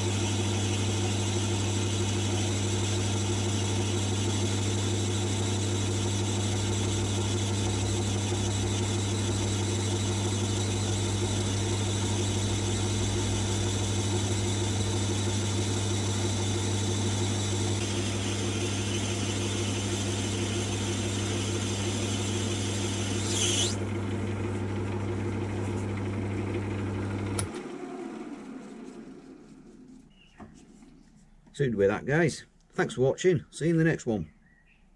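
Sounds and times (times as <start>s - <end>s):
metal lathe motor hum: 0.0s - 29.2s
high-pitched squeal: 23.1s - 23.8s.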